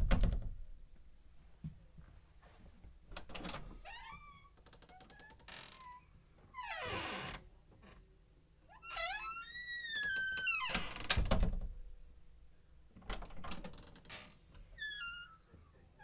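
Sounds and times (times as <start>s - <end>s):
door hinges squeaking: 8.8s - 11.5s, 13.1s - 15.4s.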